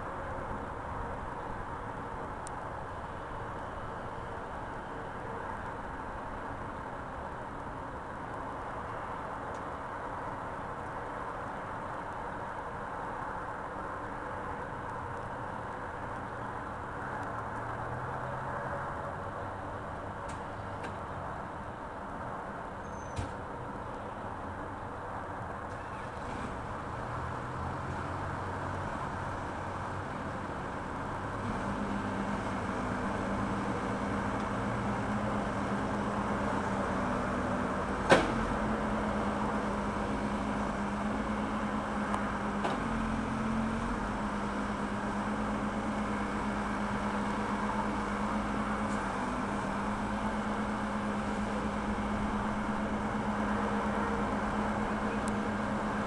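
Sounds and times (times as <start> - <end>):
diesel engine running: 23.2 - 56.0.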